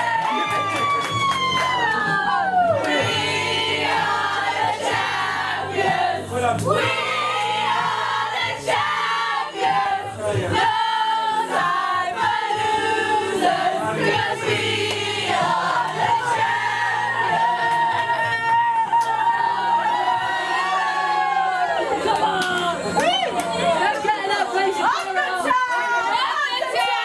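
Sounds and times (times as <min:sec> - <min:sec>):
steady bass line: 0:00.0 - 0:18.7
song from a speaker: 0:00.0 - 0:23.9
group of people singing: 0:00.0 - 0:27.0.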